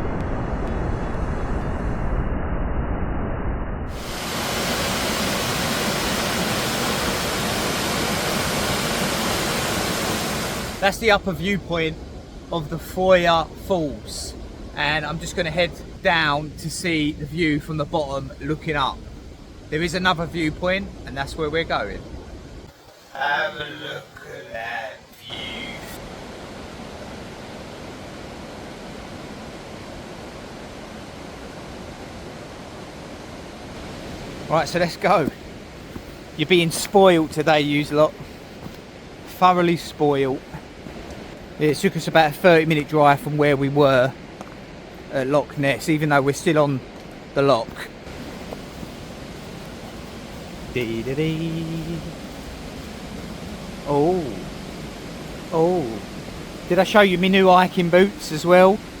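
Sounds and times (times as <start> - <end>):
waterfall rushing: 3.9 - 11.8, 23.0 - 59.0.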